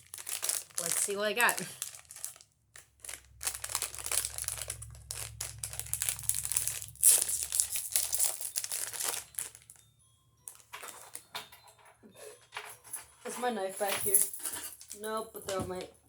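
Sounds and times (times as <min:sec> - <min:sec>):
packaging crinkling and rustling: 0:00.0 - 0:09.9, 0:10.5 - 0:11.8.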